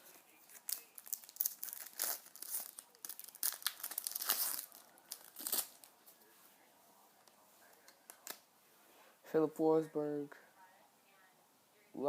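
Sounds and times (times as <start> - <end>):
wrapper tearing and crinkling: 0.0 - 5.9.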